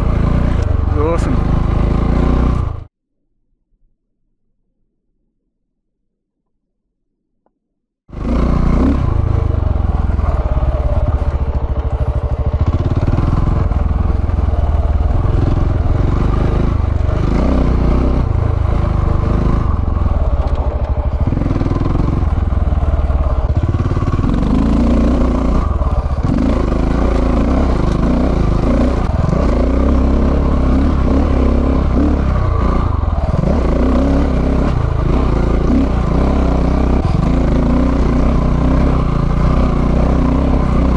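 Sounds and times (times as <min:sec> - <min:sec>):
motorcycle engine revving: 0:00.0 - 0:03.0, 0:08.1 - 0:40.9.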